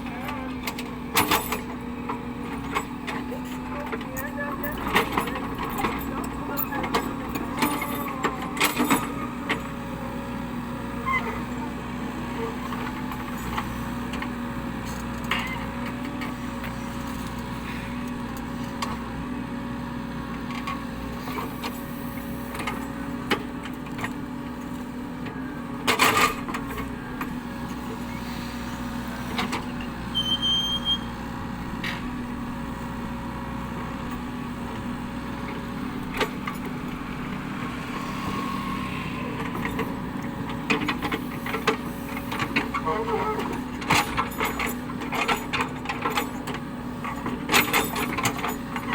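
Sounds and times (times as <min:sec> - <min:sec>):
excavator diesel engine running: 0:00.0 - 0:48.9
brief high squeak: 0:30.1 - 0:31.2.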